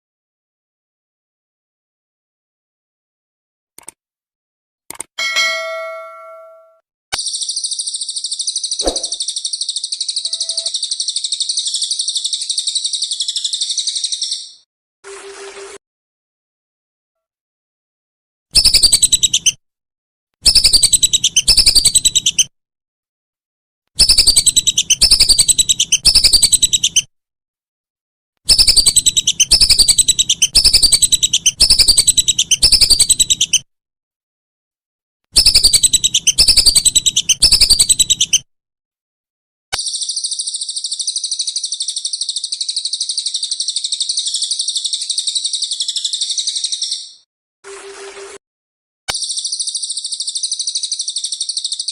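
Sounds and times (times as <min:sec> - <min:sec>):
bird song with repeated high notes: 0:05.2 - 0:14.7, 0:18.6 - 0:19.6, 0:20.4 - 0:22.5, 0:24.0 - 0:27.1, 0:28.5 - 0:33.6, 0:35.4 - 0:38.4, 0:39.8 - 0:48.4, 0:49.1 - 0:51.9
high-pitched bird trill: 0:05.2 - 0:14.7, 0:20.5 - 0:22.4, 0:28.5 - 0:33.6, 0:35.4 - 0:38.4, 0:39.8 - 0:47.3, 0:49.2 - 0:51.9.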